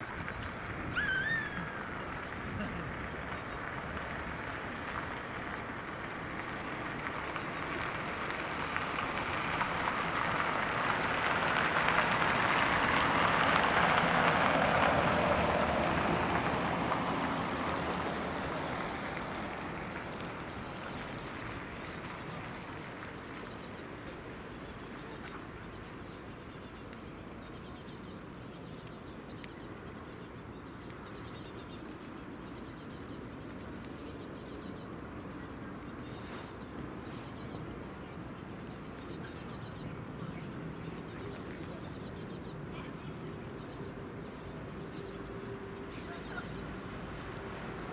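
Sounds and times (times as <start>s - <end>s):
motor boat passing: 0.0s - 23.3s, 39.7s - 47.9s.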